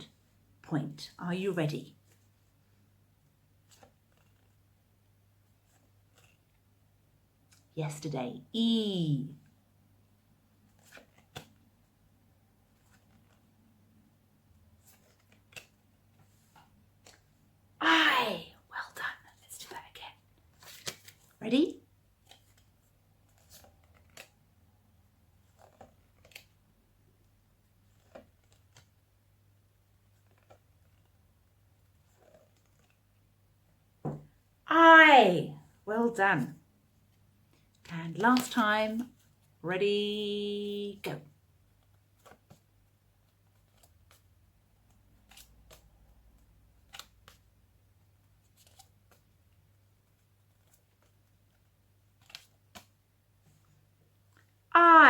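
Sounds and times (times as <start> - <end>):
paper cards clicking and rustling: 3.6 - 4.7, 5.5 - 6.6, 10.6 - 11.7, 12.7 - 17.4, 20.5 - 21.4, 22.1 - 33.2, 41.6 - 54.6.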